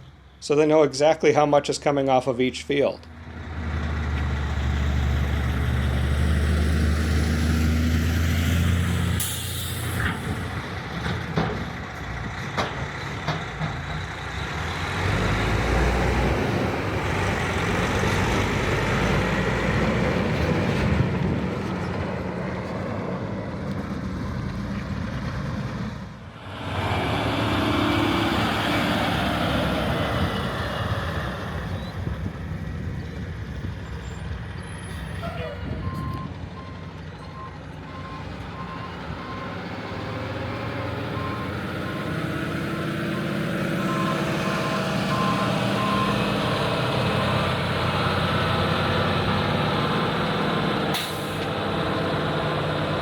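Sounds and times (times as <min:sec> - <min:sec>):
truck engines running: 0:00.0 - 0:53.0
air brake hiss: 0:09.2 - 0:10.5, 0:50.9 - 0:51.5.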